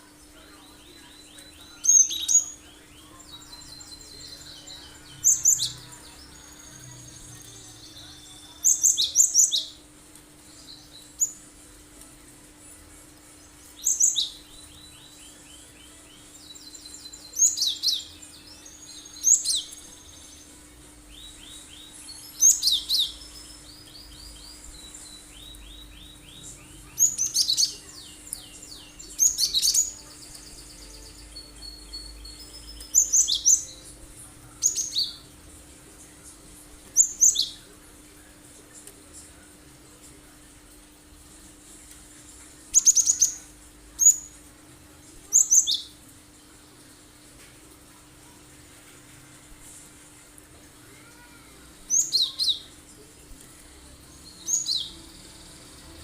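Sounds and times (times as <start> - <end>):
bird singing high calls and trills: 0.4 - 9.8, 10.4 - 11.5, 13.4 - 34.0, 37.0 - 37.7, 42.7 - 44.4, 45.3 - 46.0, 51.9 - 52.8, 54.0 - 56.0.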